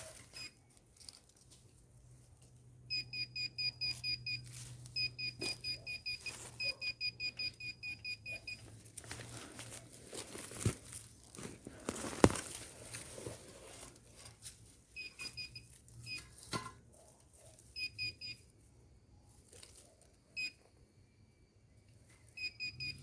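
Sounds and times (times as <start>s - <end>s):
metal detector beeping: 0.1s - 0.6s, 2.9s - 9.2s, 14.9s - 16.4s, 17.6s - 18.5s, 20.4s - 20.7s, 22.2s - 23.0s.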